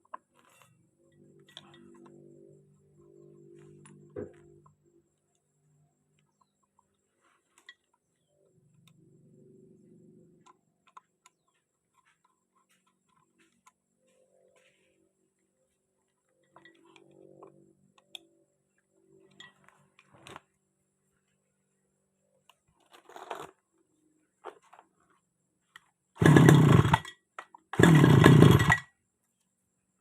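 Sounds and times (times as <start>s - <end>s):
faint clicks and handling: 0.0s - 9.1s, 9.8s - 15.1s, 16.0s - 20.7s
small engine starting and running: 26.1s - 29.0s.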